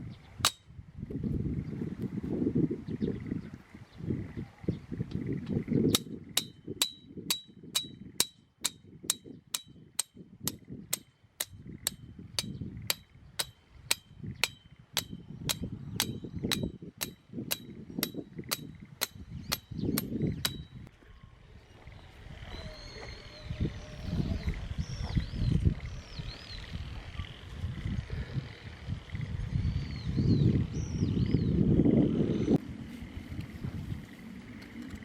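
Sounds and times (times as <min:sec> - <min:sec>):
wind rumble on microphone: 0:00.0 - 0:35.0.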